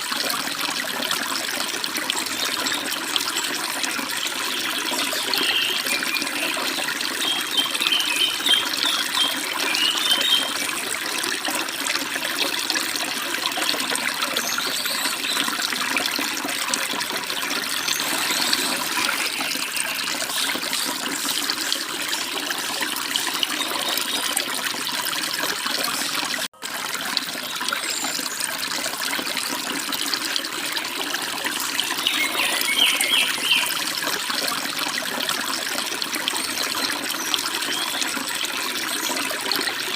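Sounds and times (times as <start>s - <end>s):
stream water over rocks: 0.0s - 39.9s
bird chirps: 5.3s - 10.6s, 32.0s - 33.7s.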